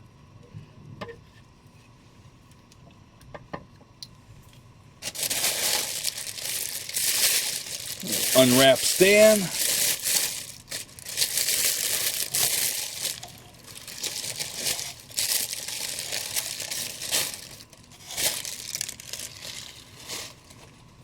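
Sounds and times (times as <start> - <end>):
packing wrap crinkling: 5.0 - 21.0.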